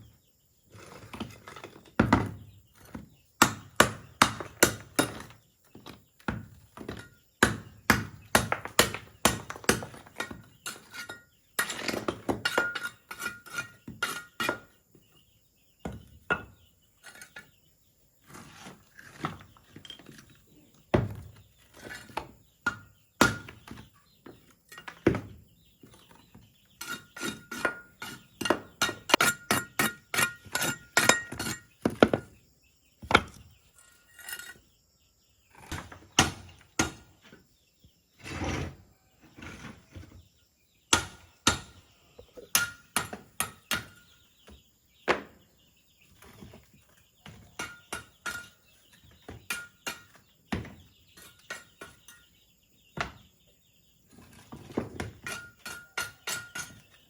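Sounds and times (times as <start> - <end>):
chopping strikes on bamboo: 3.4 - 5.2.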